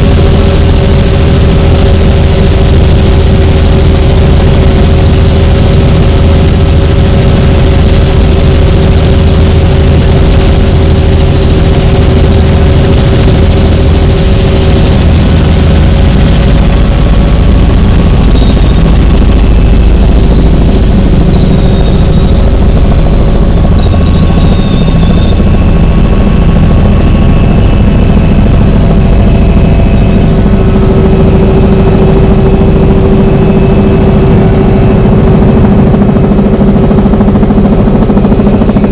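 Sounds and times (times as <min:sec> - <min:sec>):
helicopter engine and rotor drone: 0:00.0 - 0:38.9
high-pitched turbine whine: 0:00.0 - 0:38.9.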